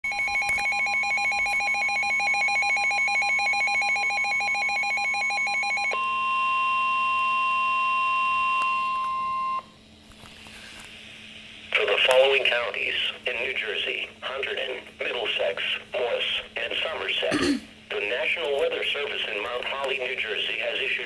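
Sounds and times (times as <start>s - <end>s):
steady alarm tone: 0.1s - 9.8s.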